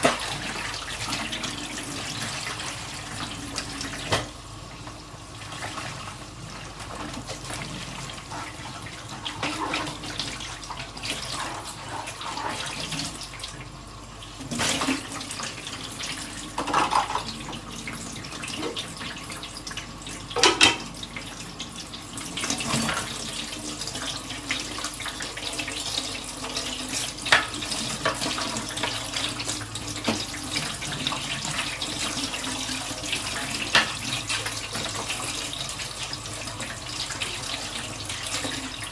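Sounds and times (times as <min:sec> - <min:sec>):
tap water running: 0:00.0 - 0:38.9
dishes clinking in sink: 0:16.6 - 0:17.6, 0:20.4 - 0:20.9.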